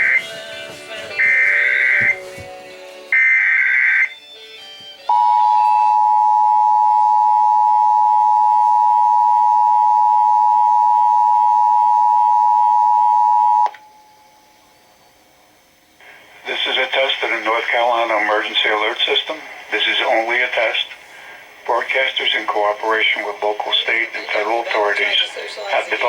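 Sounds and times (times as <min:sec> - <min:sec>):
two-tone attention signal: 0:05.1 - 0:14.1.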